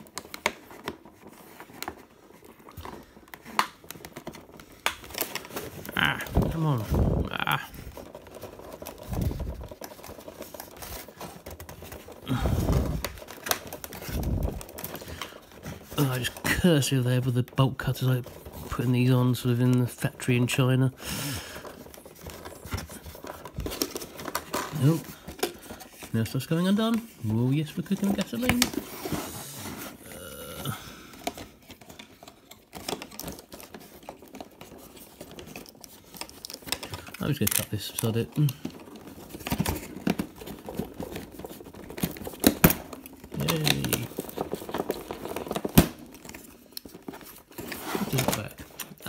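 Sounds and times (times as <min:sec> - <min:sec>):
cardboard packaging crackling: 0:00.0 - 0:49.0.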